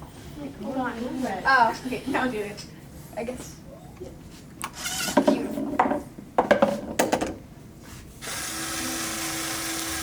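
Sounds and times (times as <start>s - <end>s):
small electric motor humming: 8.2s - 10.0s.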